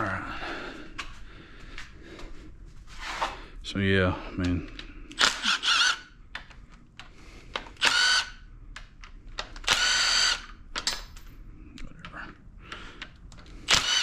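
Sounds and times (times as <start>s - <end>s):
impact wrench whining: 5.1s - 6.2s, 7.5s - 8.4s, 9.4s - 10.9s, 13.6s - 14.0s.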